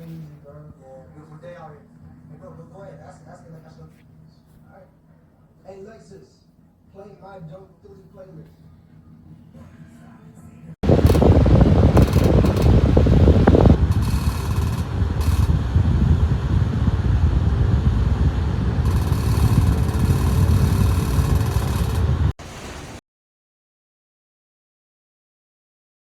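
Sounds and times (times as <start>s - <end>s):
fan wind rumble on microphone: 10.8s - 23.0s.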